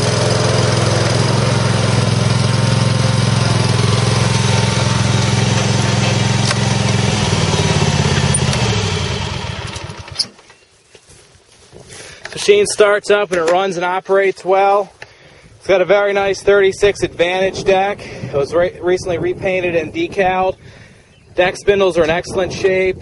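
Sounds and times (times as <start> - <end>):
engine spinning down: 0.0 - 10.4
lawn mower engine running: 0.0 - 14.5.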